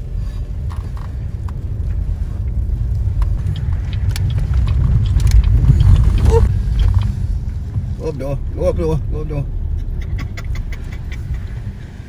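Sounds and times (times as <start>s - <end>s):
engine and tyres rumbling: 0.0s - 12.0s
faint clicks: 2.4s - 7.2s.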